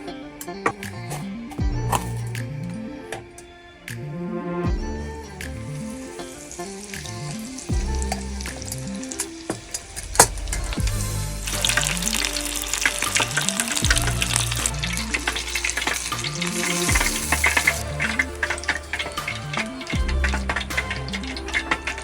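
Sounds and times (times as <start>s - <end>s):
background music: 0.0s - 22.0s
oysters deep-frying in oil: 5.8s - 22.0s.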